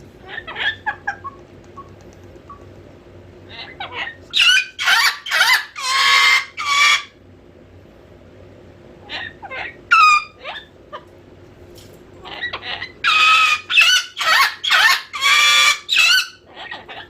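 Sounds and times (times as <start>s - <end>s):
cockatoo calling loudly: 0.2s - 1.4s, 3.5s - 7.2s, 9.1s - 11.1s, 12.2s - 17.0s.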